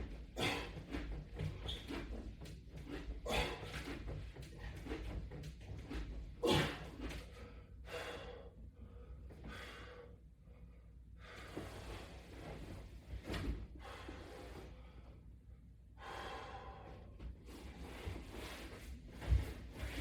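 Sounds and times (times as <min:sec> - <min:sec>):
man breathing hard: 0:06.4 - 0:11.7, 0:13.7 - 0:17.2.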